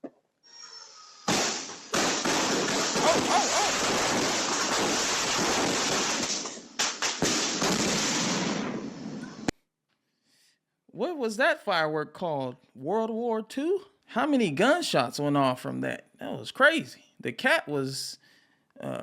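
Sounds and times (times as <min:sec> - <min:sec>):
firework barrage bangs: 0:01.3 - 0:09.5
person crying out: 0:03.0 - 0:04.0.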